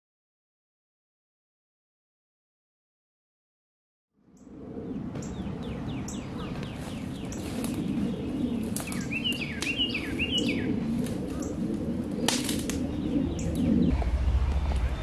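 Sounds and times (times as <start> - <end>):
bird chirps: 4.3 - 11.6
whistled bird notes: 4.4 - 11.6.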